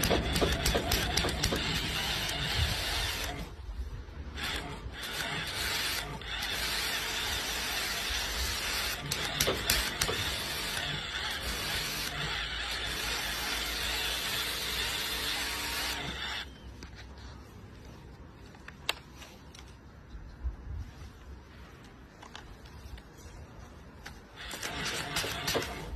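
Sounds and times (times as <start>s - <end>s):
mechanical rattling and clicking: 0.0s - 3.6s, 4.3s - 16.5s, 24.0s - 25.9s.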